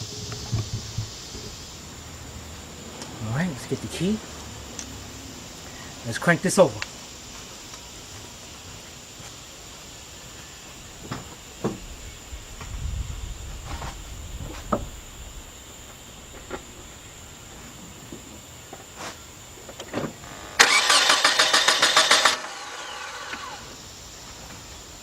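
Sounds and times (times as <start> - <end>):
starter motor cranking: 20.2 - 23.8.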